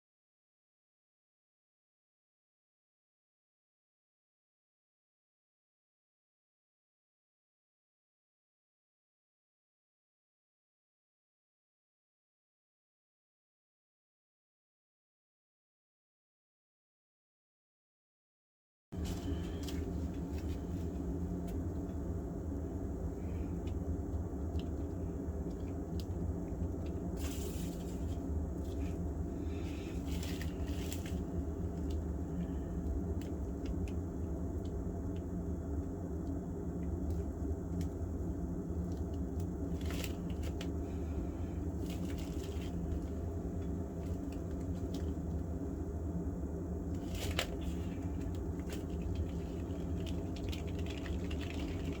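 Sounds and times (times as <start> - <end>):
low hum: 19.0 - 52.0.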